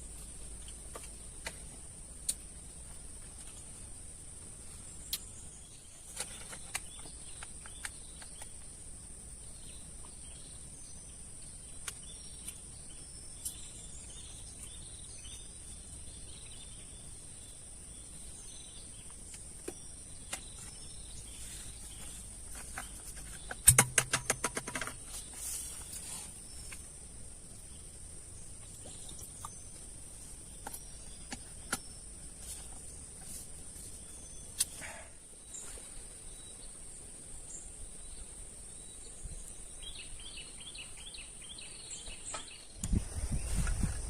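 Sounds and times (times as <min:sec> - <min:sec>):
small clicks and chirps: 0:05.0 - 0:08.7, 0:11.7 - 0:14.9, 0:28.6 - 0:29.9.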